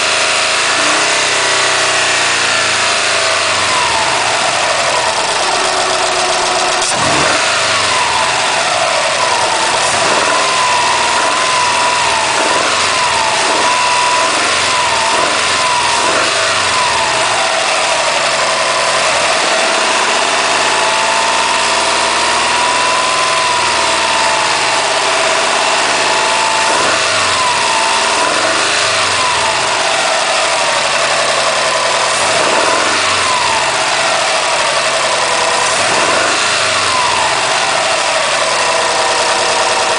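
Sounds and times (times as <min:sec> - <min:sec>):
car engine revving: 0:00.0 - 0:39.9
weird engine noise: 0:00.0 - 0:39.9.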